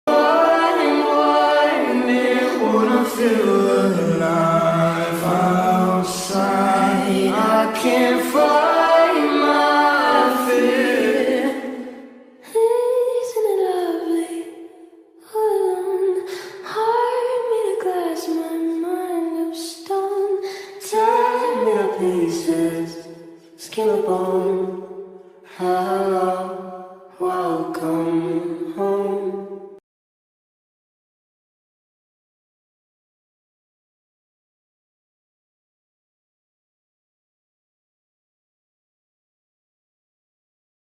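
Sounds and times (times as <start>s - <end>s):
a cappella voices singing: 0.0s - 14.6s, 15.2s - 24.9s, 25.5s - 29.8s
high-pitched voice singing: 12.4s - 14.5s, 15.2s - 22.1s.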